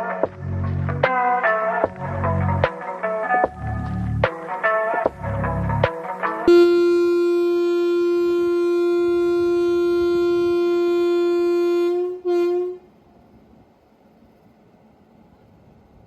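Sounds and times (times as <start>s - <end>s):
locomotive air horn blasts: 6.5s - 12.9s.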